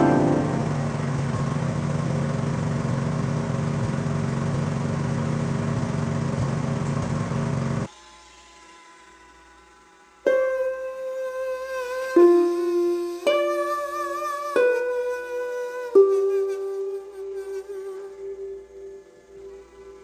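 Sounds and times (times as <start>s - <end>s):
faint music: 0.0s - 1.3s, 7.9s - 20.0s
snow blower engine running: 0.0s - 7.9s.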